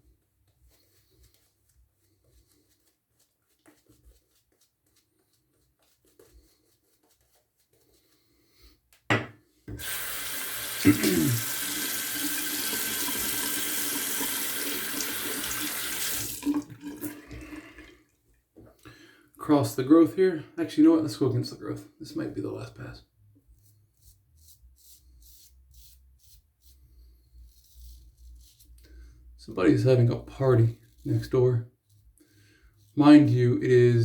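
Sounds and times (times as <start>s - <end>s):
tap running into a sink: 9.1s - 17.9s.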